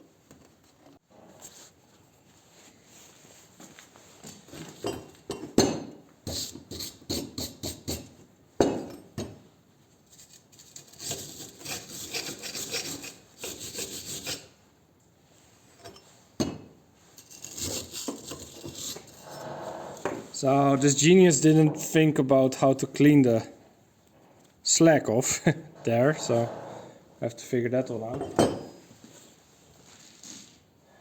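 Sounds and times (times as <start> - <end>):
hand tool scraping steel: 10.6 - 14.6, 17.2 - 20.4, 25.3 - 27.2.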